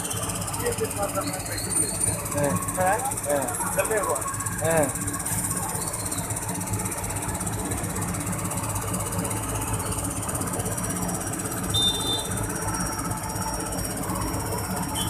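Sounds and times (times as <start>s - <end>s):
engine running steadily: 0.0s - 15.0s
high-pitched beep: 11.7s - 12.5s.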